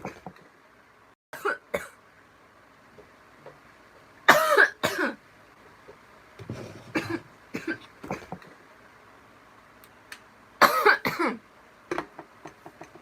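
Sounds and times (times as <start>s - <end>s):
woman coughing: 4.3s - 5.2s, 6.9s - 8.3s, 10.6s - 11.4s.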